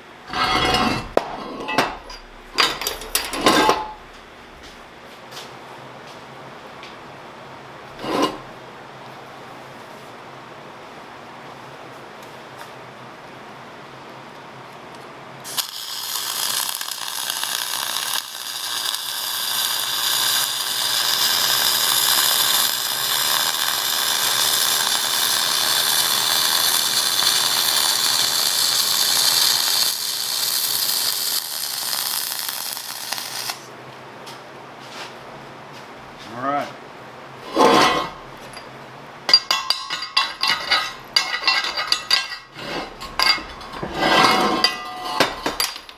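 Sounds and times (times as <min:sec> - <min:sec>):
welding arc crackling: 0:15.4 - 0:33.7.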